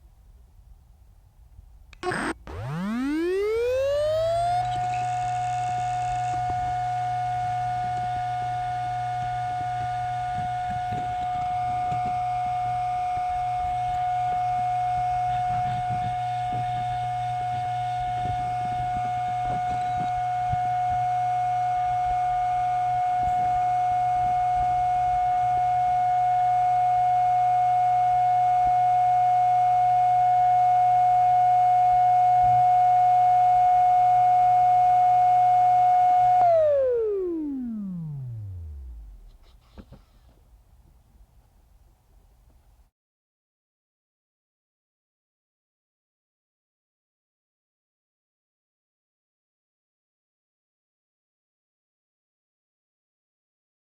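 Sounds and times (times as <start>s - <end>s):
hard drive clicks: 2.0s - 14.3s
hard drive spinning whine: 2.0s - 40.2s.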